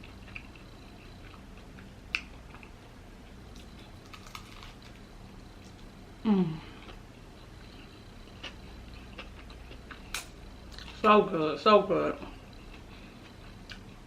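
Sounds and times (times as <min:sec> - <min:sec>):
person humming mmm: 0:06.2 - 0:07.0.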